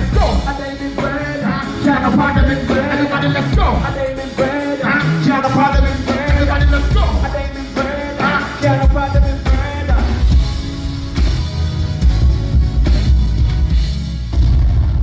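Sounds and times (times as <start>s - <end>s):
person singing: 0.0s - 10.4s
live band playing: 0.0s - 15.0s.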